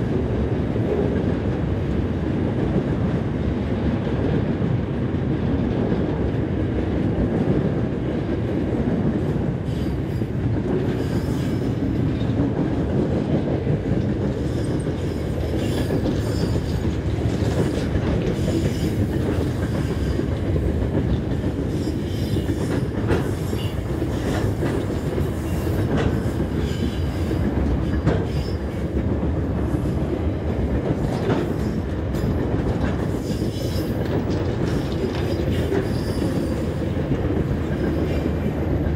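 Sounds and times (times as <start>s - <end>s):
clacks over rail joints: 0.0s - 38.9s
train wheels rumbling on rails: 0.0s - 38.9s.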